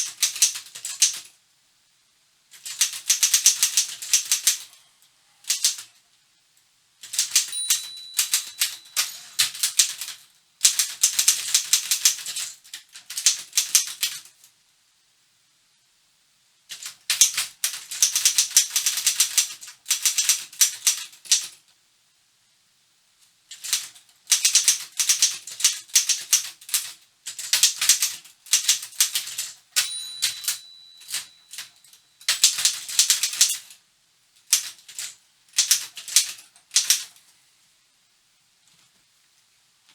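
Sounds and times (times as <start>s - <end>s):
typewriter keystrokes clacking: 0.0s - 1.3s, 2.6s - 4.7s, 5.5s - 5.9s, 7.0s - 14.3s, 16.7s - 21.6s, 23.5s - 33.7s, 34.5s - 37.1s
typewriter bell ringing: 7.1s - 10.2s, 29.8s - 33.6s.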